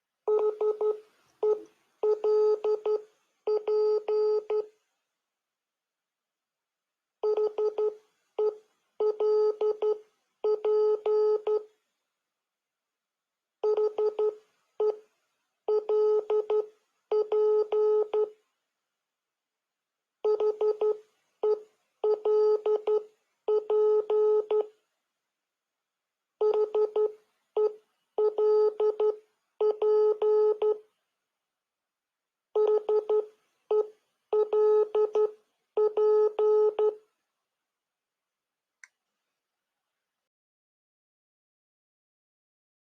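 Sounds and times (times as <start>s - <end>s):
morse code beeps: 26.4s - 30.8s, 32.6s - 37.0s.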